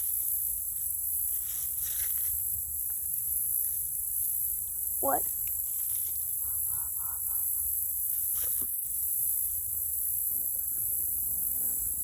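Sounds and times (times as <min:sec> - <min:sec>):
insects buzzing chorus: 0:00.0 - 0:12.0.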